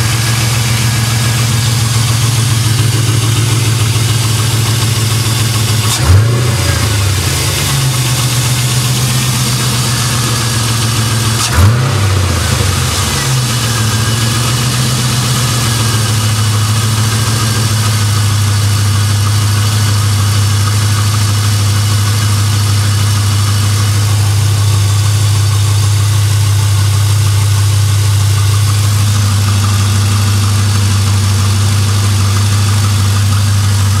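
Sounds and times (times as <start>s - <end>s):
car engine idling and blipped: 0.0s - 34.0s.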